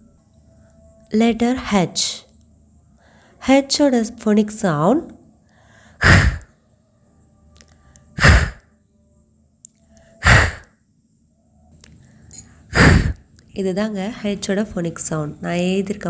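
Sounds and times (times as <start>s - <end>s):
woman breathy exhalation: 5.7s - 6.5s, 8.2s - 8.6s, 10.2s - 10.7s, 12.7s - 13.2s.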